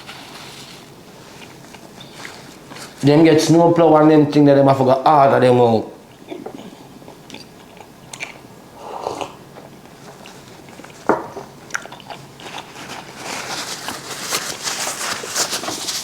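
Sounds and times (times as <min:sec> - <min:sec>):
crunching and crackling: 0:09.9 - 0:16.0.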